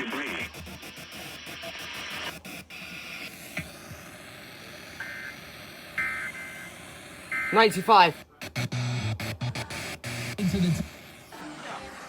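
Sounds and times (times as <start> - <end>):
radio static hiss: 0.0 - 12.0
static clicks: 7.3 - 11.3.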